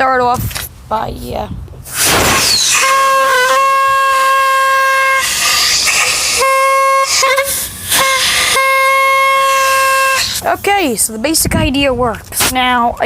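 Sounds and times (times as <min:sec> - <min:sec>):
air hissing: 0:01.8 - 0:10.5
bicycle horn honking: 0:02.4 - 0:10.5.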